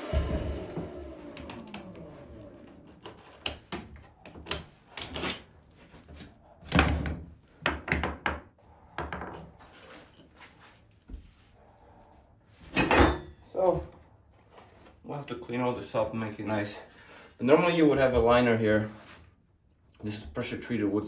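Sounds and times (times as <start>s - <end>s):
power tool motor spinning down: 0.0s - 3.4s.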